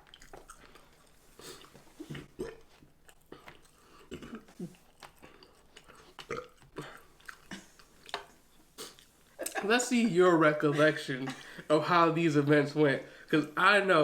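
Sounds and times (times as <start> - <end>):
chewing and mouth clicks: 0.0 - 9.6
person burping: 2.0 - 2.7, 4.0 - 4.8, 6.2 - 7.8.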